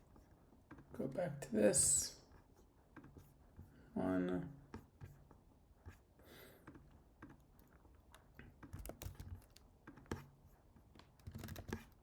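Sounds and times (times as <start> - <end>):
typing on computer keyboard: 8.6 - 10.0, 11.1 - 12.0.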